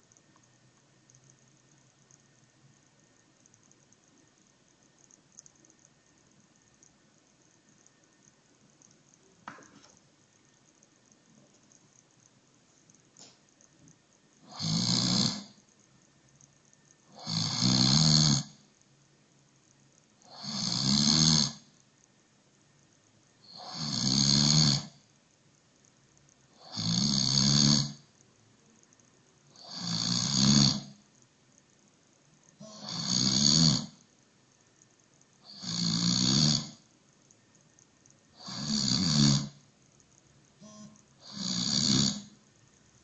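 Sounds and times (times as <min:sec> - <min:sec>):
quiet breaths: 0:00.0 - 0:43.0
person snoring: 0:14.4 - 0:15.6, 0:17.1 - 0:18.6, 0:20.2 - 0:21.7, 0:23.4 - 0:25.0, 0:26.6 - 0:28.0, 0:29.6 - 0:31.0, 0:32.7 - 0:34.0, 0:35.4 - 0:36.8, 0:38.4 - 0:39.6, 0:41.2 - 0:42.4.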